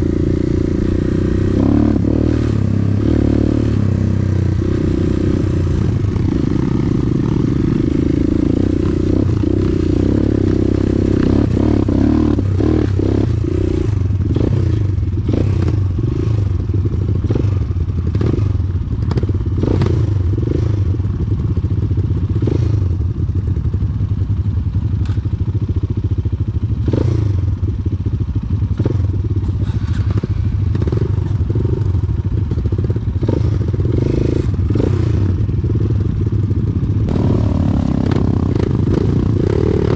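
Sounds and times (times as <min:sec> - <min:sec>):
motorcycle engine at low revs: 0:00.0 - 0:39.9.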